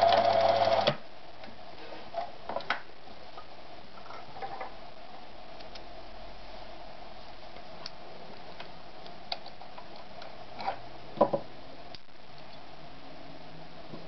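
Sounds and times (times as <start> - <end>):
sewing machine hum: 0.0 - 0.9.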